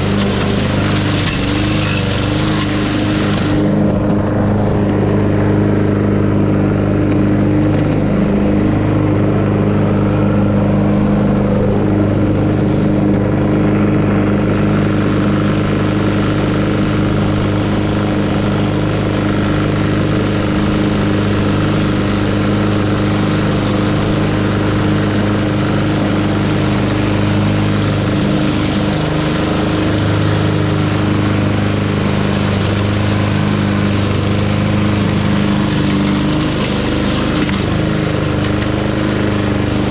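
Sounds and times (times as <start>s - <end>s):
engine running steadily: 0.0s - 39.9s.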